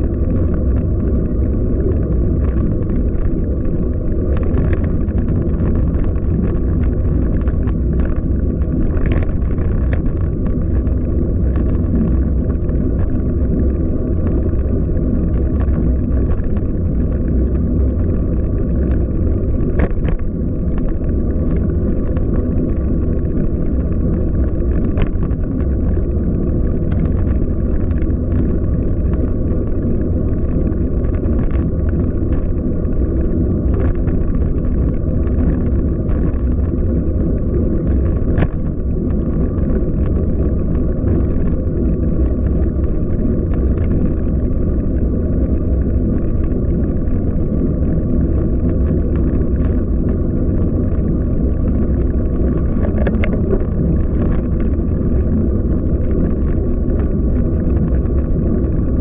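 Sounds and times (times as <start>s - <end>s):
light clicks and rattles: 0.0s - 47.5s, 48.2s - 57.1s
bicycle tyres rolling on street: 0.0s - 59.0s
wind buffeting microphone: 0.0s - 59.0s.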